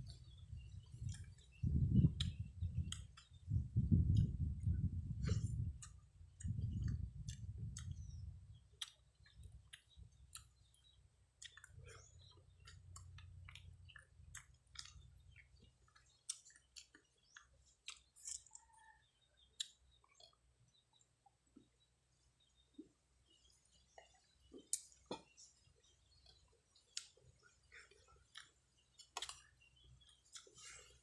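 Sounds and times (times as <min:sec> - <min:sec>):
person chewing food: 0:00.0 - 0:03.4, 0:04.0 - 0:20.4, 0:23.8 - 0:31.0
lip smacks and mouth clicks: 0:05.3 - 0:08.1, 0:08.8 - 0:09.0, 0:12.6 - 0:18.6, 0:28.3 - 0:29.4.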